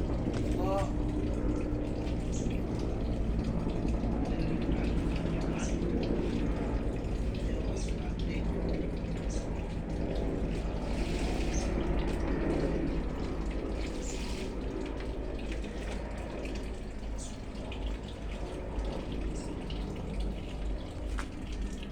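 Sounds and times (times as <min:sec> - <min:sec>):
helicopter passing: 0:00.0 - 0:21.9.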